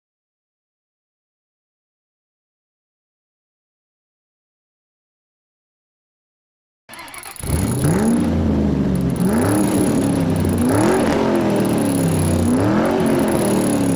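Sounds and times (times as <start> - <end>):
pickup engine revving: 6.9 - 13.9.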